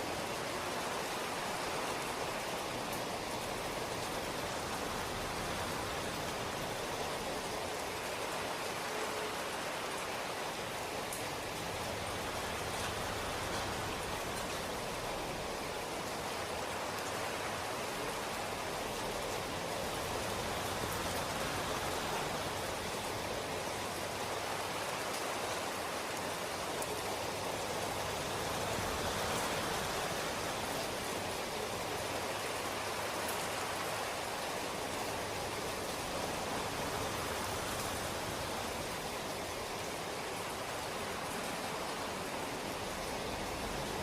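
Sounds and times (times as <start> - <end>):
steady rain falling: 0.0 - 44.0.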